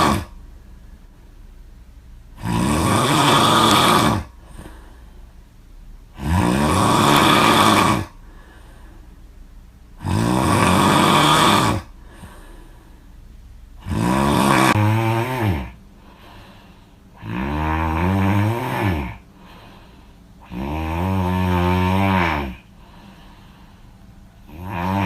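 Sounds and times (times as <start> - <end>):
person snoring loudly: 0.0 - 0.4, 2.4 - 4.9, 6.1 - 8.2, 10.0 - 12.4, 13.8 - 16.3, 17.1 - 19.7, 20.4 - 23.4, 24.4 - 25.0.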